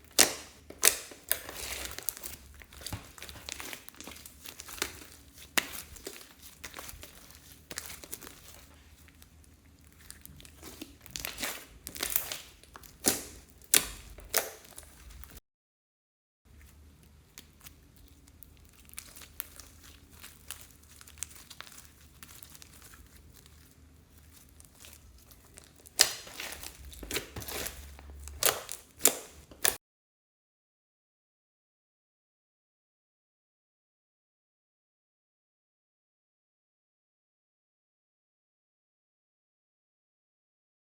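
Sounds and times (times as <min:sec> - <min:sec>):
slime crackling and popping: 0:00.0 - 0:15.4, 0:17.2 - 0:29.8.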